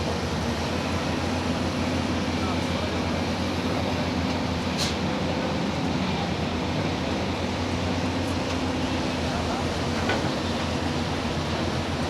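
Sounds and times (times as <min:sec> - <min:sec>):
excavator diesel engine running: 0:00.0 - 0:12.0.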